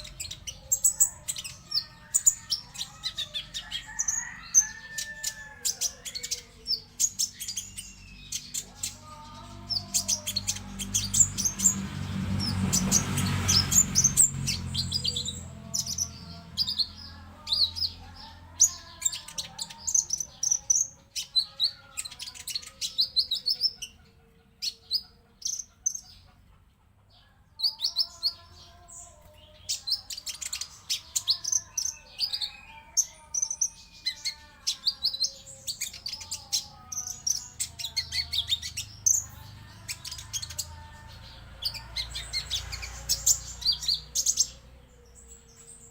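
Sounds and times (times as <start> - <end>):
songbird singing: 0.0 - 45.9.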